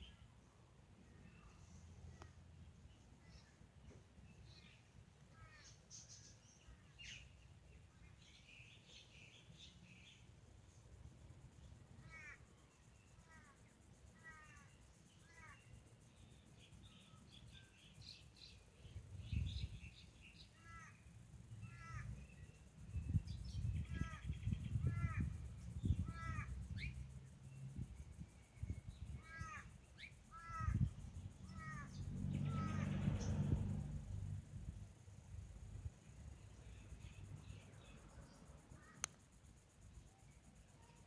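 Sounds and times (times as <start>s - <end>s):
birds calling: 29.0s - 33.5s.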